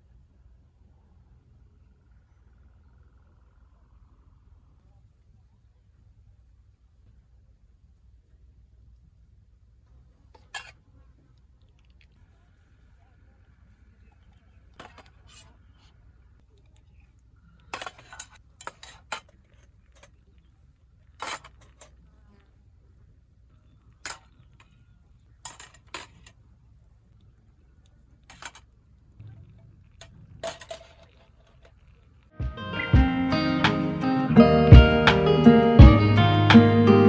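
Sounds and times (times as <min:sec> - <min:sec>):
faint low rumble: 0:00.0 - 0:18.4, 0:26.3 - 0:33.1
clinks of dishes and utensils: 0:14.8 - 0:15.5, 0:17.6 - 0:20.1, 0:21.2 - 0:22.0, 0:28.3 - 0:28.6, 0:30.0 - 0:31.8.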